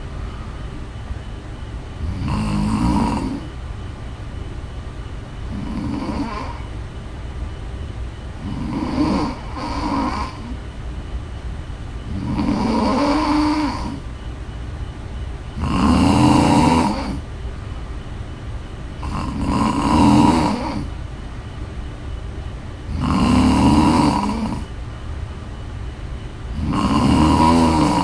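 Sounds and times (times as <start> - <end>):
woman snoring: 2.0 - 3.6, 5.5 - 6.7, 8.4 - 10.6, 12.1 - 14.0, 15.6 - 17.2, 19.0 - 21.0, 22.9 - 24.7, 26.5 - 28.0.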